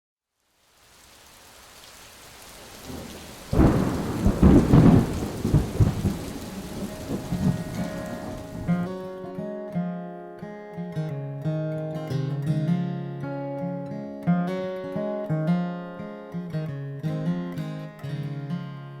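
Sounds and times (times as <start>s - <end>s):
steady rain falling: 0.3s - 8.9s
thunder clap and rumble: 2.8s - 8.9s.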